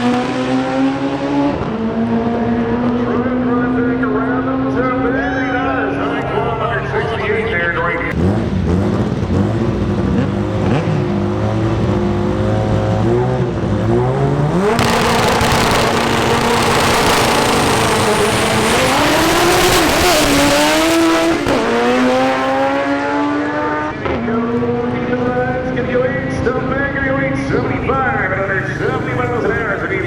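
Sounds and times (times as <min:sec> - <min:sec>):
drag race car engine revving: 0:00.0 - 0:30.0
loud rushing noise: 0:14.6 - 0:22.8.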